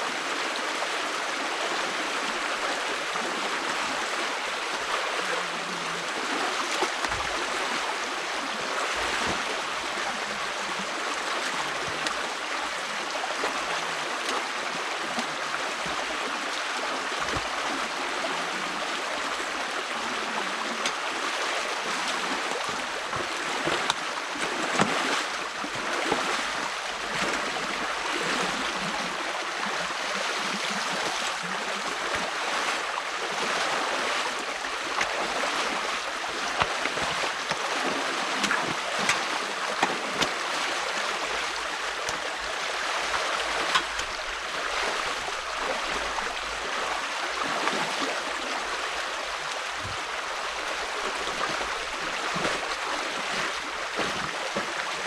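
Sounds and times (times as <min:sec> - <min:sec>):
stream water rushing: 0:00.0 - 0:55.0
sharp water splashes: 0:20.7 - 0:29.1, 0:30.3 - 0:46.1, 0:51.2 - 0:55.0.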